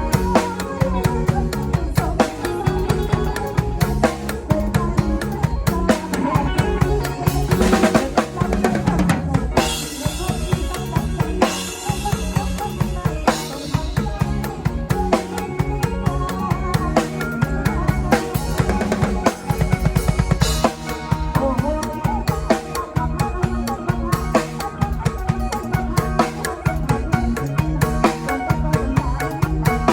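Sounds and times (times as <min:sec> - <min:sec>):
bass drum and snare beat: 0:00.0 - 0:29.9
instrumental folk music: 0:00.0 - 0:29.9.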